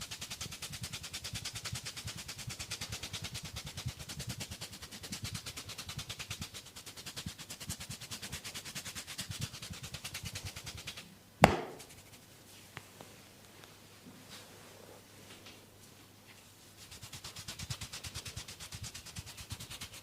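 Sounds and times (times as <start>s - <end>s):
hands patting body in massage: 9.3s - 12.2s
loud sharp smack: 11.4s - 11.9s.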